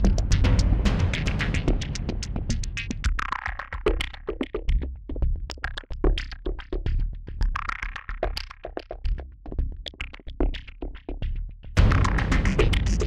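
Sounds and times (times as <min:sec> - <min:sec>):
steady bass: 0:00.0 - 0:03.2, 0:11.8 - 0:13.0
drum machine beat: 0:00.0 - 0:13.0
synthesizer track: 0:11.8 - 0:13.0.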